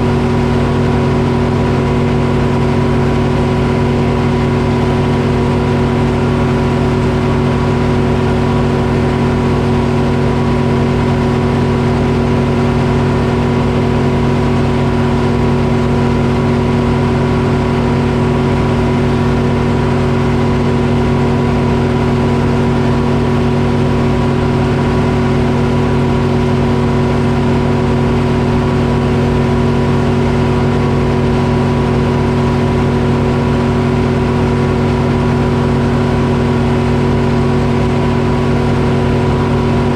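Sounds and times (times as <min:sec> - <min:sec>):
diesel engine running steadily: 0:00.0 - 0:39.9.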